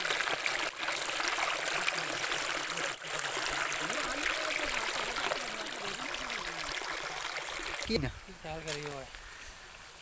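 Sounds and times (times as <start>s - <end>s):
flowing water rushing: 0.0s - 10.0s.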